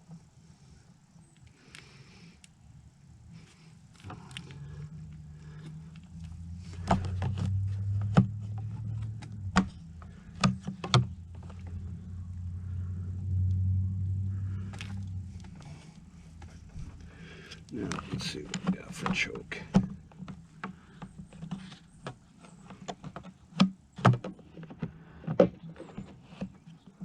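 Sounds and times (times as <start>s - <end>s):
low droning hum: 0.0s - 21.2s.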